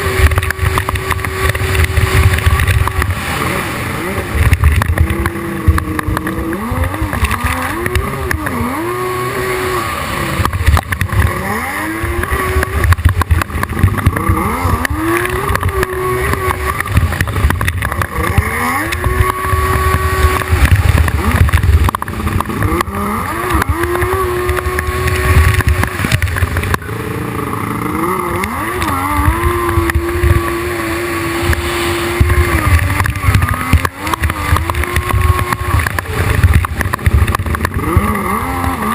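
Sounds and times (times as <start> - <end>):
jet ski engine revving: 0.0 - 38.9.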